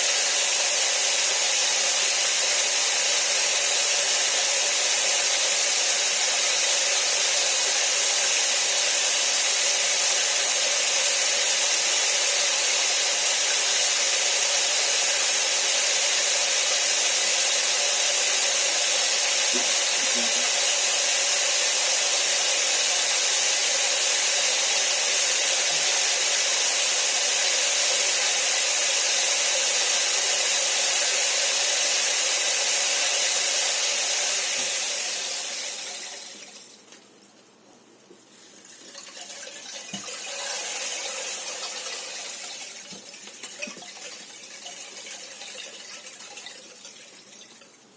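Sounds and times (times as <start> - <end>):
falling water hiss: 0.0 - 36.9, 38.3 - 47.6.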